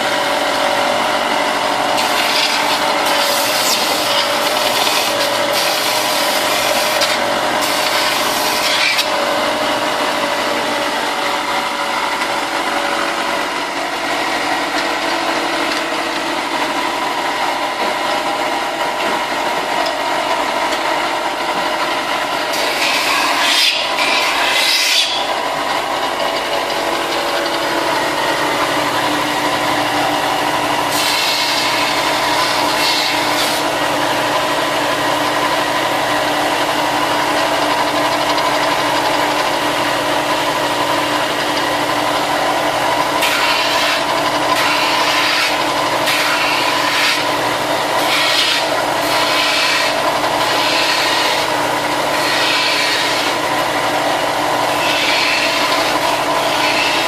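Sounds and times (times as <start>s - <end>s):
electric sander running: 0.0s - 57.0s
plastic rasping against sander: 54.7s - 57.0s.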